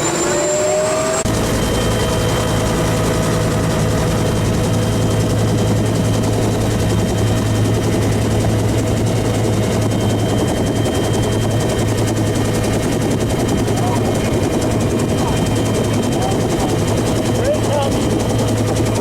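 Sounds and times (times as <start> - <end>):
helicopter rotor beating: 0.0 - 19.0.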